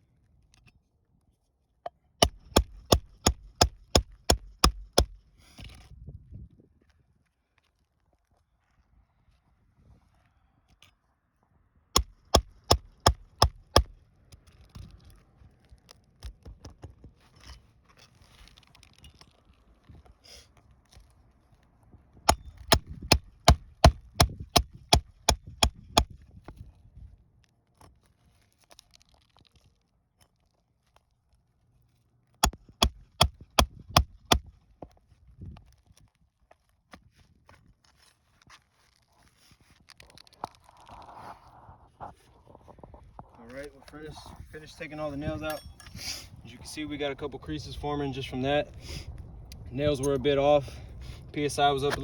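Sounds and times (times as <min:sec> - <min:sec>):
tool scraping shingles: 0:02.2 - 0:05.9, 0:12.0 - 0:14.0, 0:22.3 - 0:26.2.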